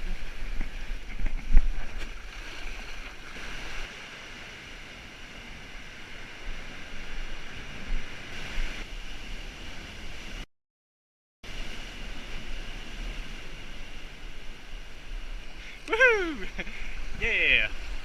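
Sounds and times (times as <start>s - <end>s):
sea water rushing: 0.0s - 10.4s, 11.5s - 18.0s.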